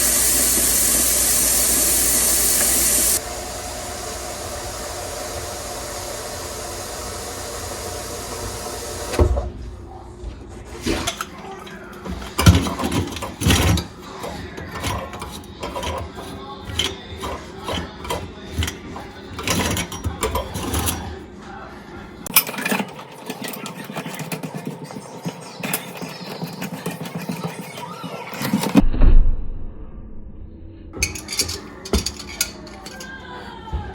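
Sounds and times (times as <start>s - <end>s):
drain-cleaning machine running: 0.0s - 9.4s.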